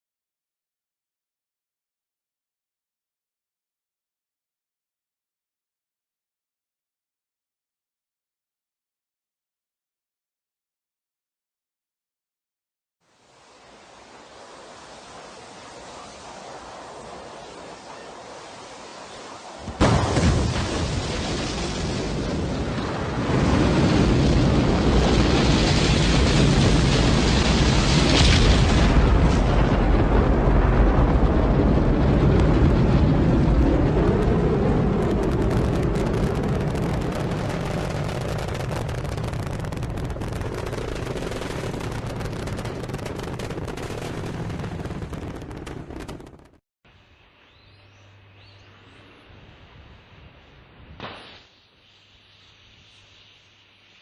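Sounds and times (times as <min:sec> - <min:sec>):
rocket launch rumble: 0:14.3 - 0:46.6.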